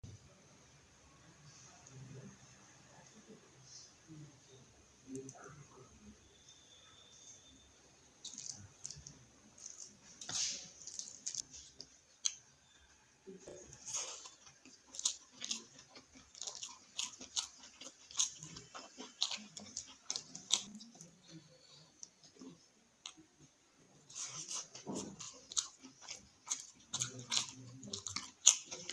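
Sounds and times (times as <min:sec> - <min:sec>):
person chewing food: 0:08.2 - 0:12.8, 0:13.4 - 0:28.9.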